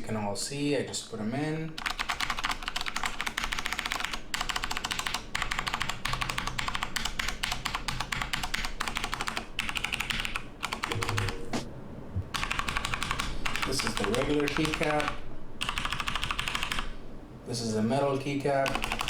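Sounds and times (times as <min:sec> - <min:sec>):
mechanical keyboard typing: 0:01.8 - 0:11.6, 0:12.3 - 0:16.9, 0:18.6 - 0:19.0.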